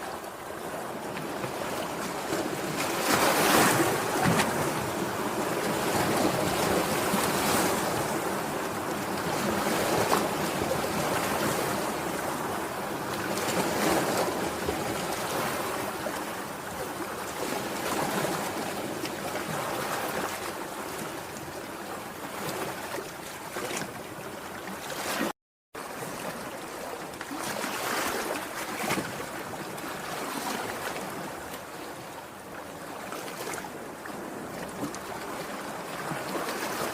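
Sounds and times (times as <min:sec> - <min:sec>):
sea waves washing onto shore: 0:00.0 - 0:36.9.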